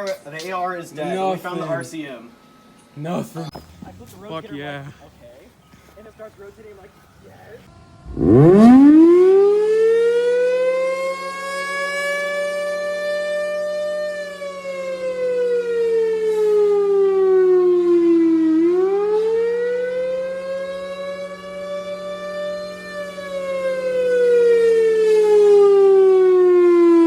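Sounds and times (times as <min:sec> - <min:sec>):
steady low hum: 0:00.0 - 0:24.5
air raid siren wailing: 0:06.1 - 0:27.0.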